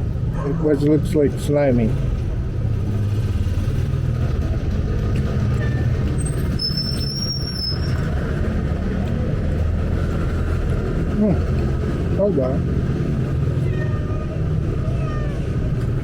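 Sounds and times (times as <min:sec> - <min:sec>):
street traffic: 0:00.0 - 0:16.0
vehicle engine droning: 0:00.0 - 0:16.0
brief high-pitched squeal: 0:05.6 - 0:08.0.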